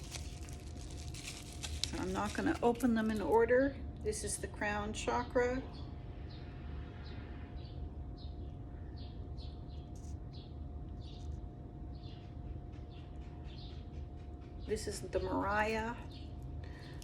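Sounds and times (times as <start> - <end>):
faint steady hum: 0.0 - 17.0
birds chirping: 4.2 - 17.0.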